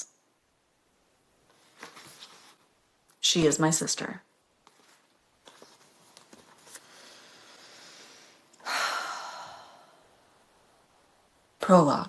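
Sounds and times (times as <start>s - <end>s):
woman breathing: 6.7s - 10.6s.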